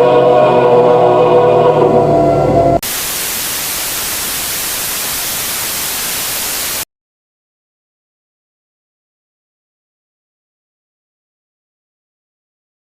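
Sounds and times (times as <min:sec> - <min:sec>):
choral singing: 0:00.0 - 0:02.8
television static hiss: 0:02.8 - 0:06.8.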